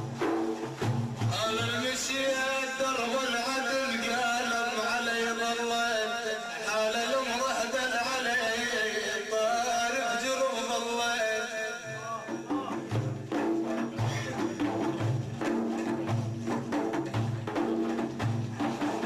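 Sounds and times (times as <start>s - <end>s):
hand drums rhythm: 0.0s - 2.1s, 12.3s - 19.0s.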